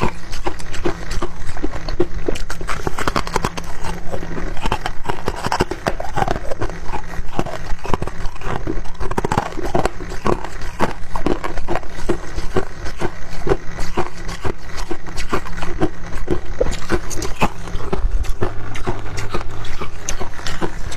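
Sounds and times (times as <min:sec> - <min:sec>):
frost being chewed: 0:00.0 - 0:20.9
low steady hum: 0:00.0 - 0:20.9.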